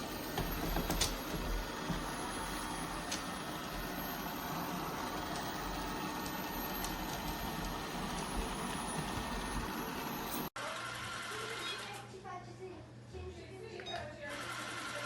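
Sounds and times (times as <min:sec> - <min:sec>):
robot vacuum whirring: 0:00.0 - 0:10.5.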